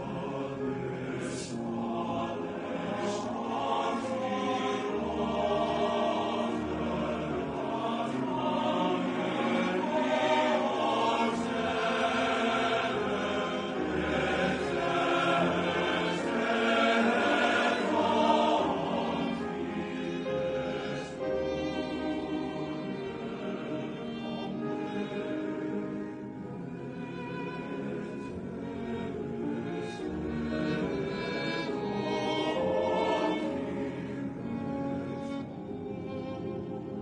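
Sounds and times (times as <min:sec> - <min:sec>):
men's chorus singing: 0:00.0 - 0:37.0.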